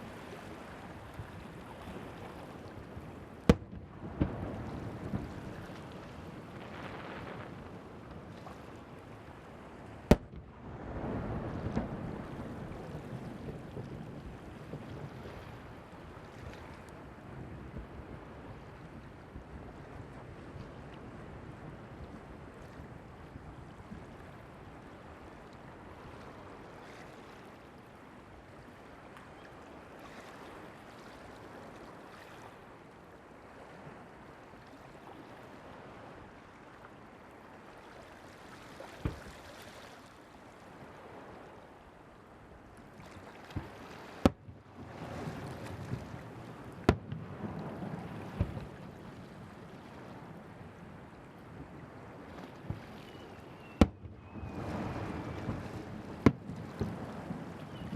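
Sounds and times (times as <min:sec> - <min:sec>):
surf washing: 0:00.0 - 0:57.9
wind: 0:00.0 - 0:57.9
firework bangs: 0:03.4 - 0:05.3, 0:10.1 - 0:10.5
rumbling crackle: 0:03.4 - 0:08.1.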